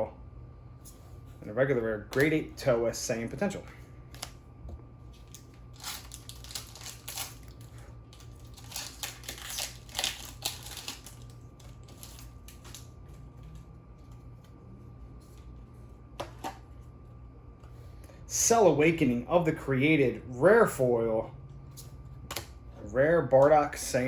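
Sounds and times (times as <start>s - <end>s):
foil wrapper crinkling: 5.1s - 13.6s.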